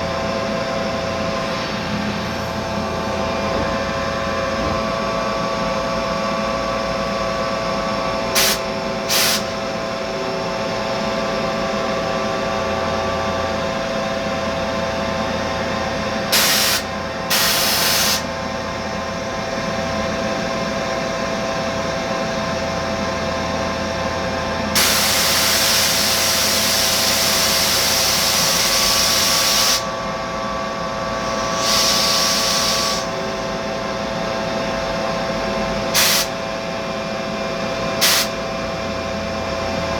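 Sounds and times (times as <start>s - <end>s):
hissing sprays: 31.5s - 33.1s.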